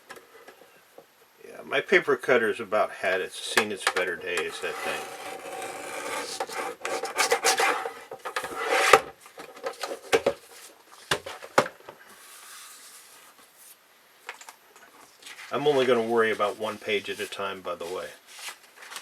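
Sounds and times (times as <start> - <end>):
paper cutter scraping paper: 3.4 - 9.1.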